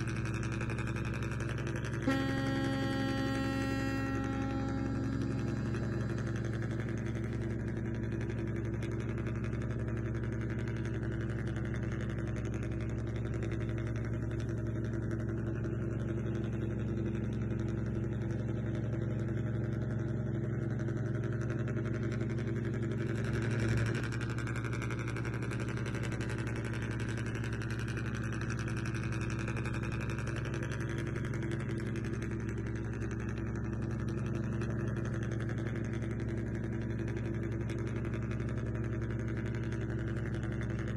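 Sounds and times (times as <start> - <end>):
steady low hum: 0.0 - 9.5.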